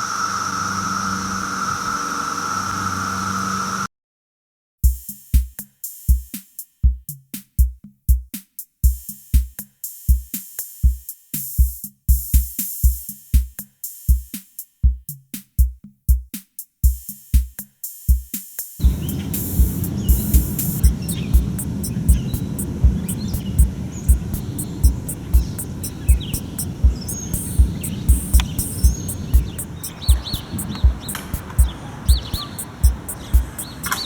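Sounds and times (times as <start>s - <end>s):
electronic drum machine beat: 4.8s - 34.0s.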